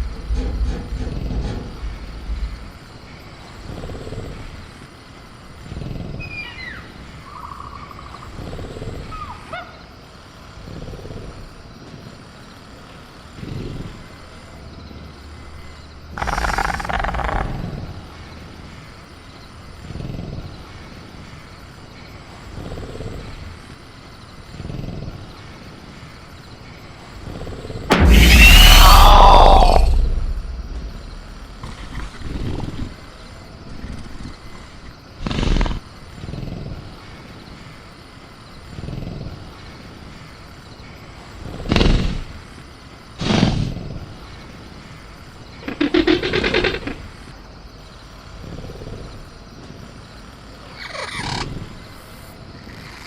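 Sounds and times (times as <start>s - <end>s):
crickets chirping: 0.0s - 53.0s
gliding creature call: 27.9s - 32.3s
low creature growls: 27.9s - 33.2s.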